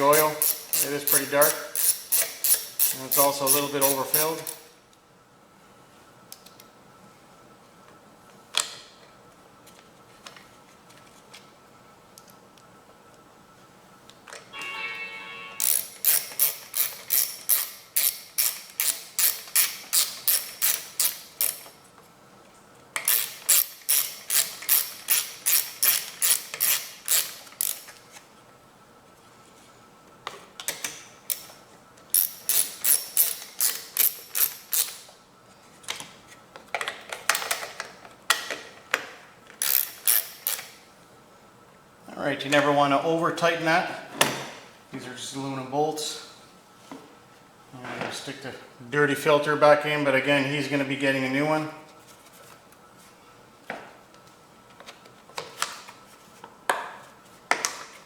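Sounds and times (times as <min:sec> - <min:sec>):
ratchet wrench clicking: 0:00.1 - 0:04.6, 0:15.6 - 0:21.7, 0:23.0 - 0:27.9, 0:32.1 - 0:35.1, 0:39.6 - 0:40.7.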